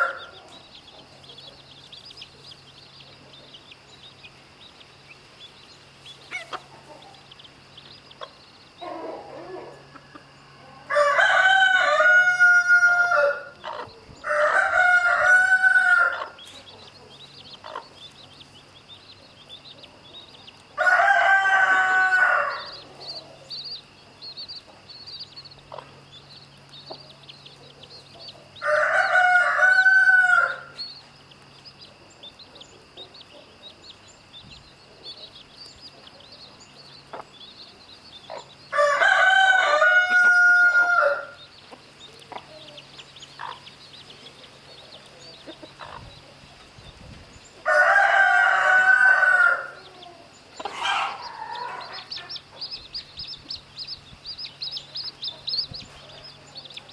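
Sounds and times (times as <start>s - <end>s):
rooster crowing: 0.0s - 0.4s, 8.8s - 13.6s, 14.2s - 16.4s, 20.8s - 22.9s, 28.6s - 30.8s, 38.7s - 41.4s, 47.6s - 52.4s
faint high chirping: 13.5s - 48.8s, 49.4s - 56.9s.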